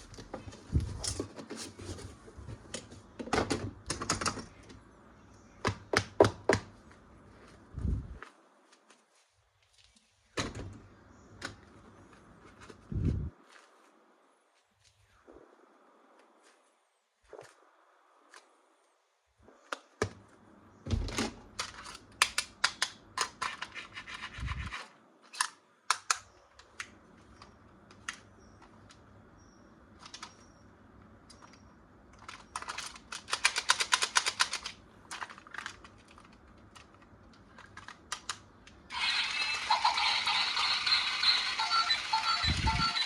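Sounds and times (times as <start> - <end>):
crinkling plastic and cardboard packaging: 35.0 - 38.3.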